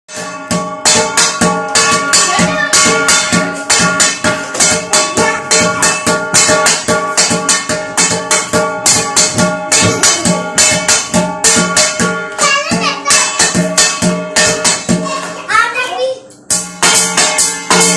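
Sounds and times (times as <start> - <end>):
steel vessels drummed by hand: 0.1 - 15.5, 16.4 - 17.9.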